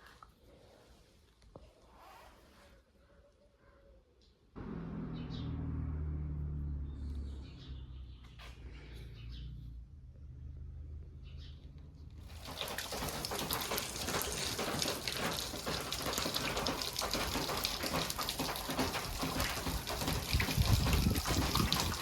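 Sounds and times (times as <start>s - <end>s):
rushing water: 12.3s - 22.0s.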